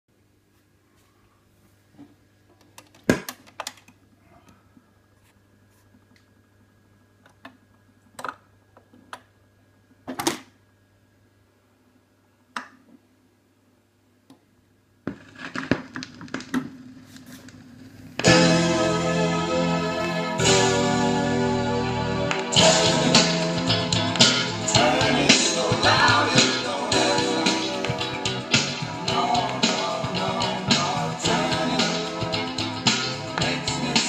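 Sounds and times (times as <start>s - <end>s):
low mains hum: 0.1s - 34.0s
vinyl surface crackle: 15.1s - 21.3s.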